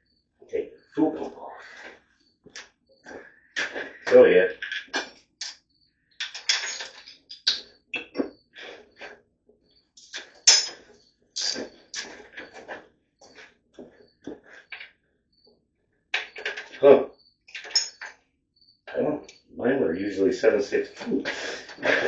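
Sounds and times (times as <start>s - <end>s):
metal hand tools clinking: 6.2s - 7.5s, 10.0s - 10.8s, 17.5s - 18.1s.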